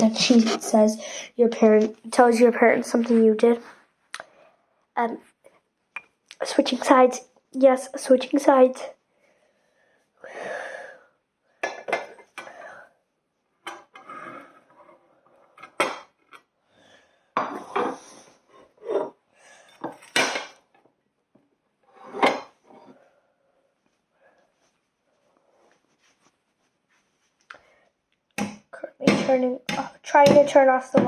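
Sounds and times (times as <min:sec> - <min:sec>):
plates and cutlery clattering: 0:11.6 - 0:12.5, 0:18.6 - 0:20.6, 0:22.0 - 0:23.0.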